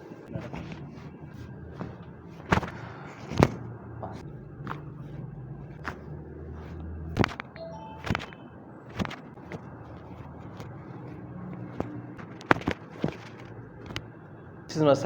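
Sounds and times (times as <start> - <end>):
spine cracking pops: 7.1 - 8.3, 11.8 - 14.1.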